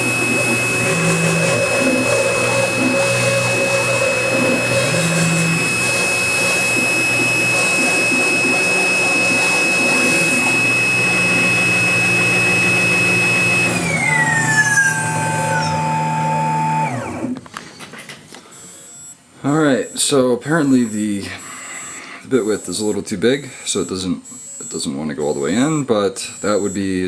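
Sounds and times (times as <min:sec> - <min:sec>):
mill spindle motor whine: 0:00.0 - 0:17.5.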